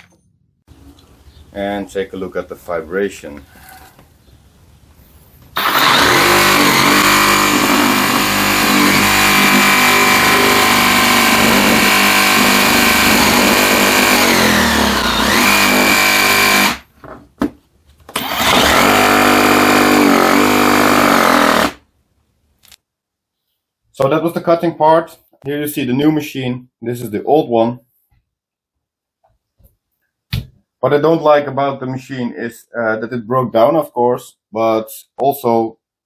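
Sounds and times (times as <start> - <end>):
reciprocating saw whining: 5.6 - 16.8.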